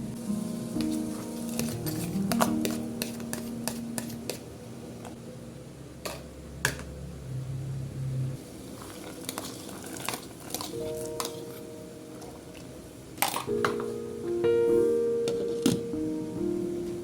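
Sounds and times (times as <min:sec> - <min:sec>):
food frying hiss: 0:08.4 - 0:11.5
utensils clinking against pans: 0:08.9 - 0:11.6.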